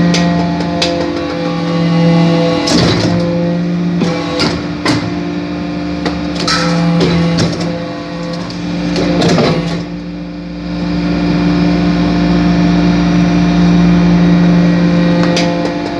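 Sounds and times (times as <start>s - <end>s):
hydraulic press humming: 0.0s - 15.9s
sharp metallic knocks: 6.4s - 7.7s.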